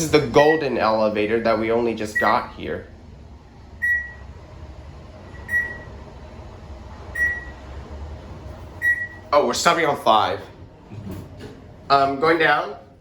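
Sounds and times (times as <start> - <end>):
low hum of moving elevator: 0.0 - 13.0
elevator beeping: 0.4 - 2.7, 3.6 - 9.5.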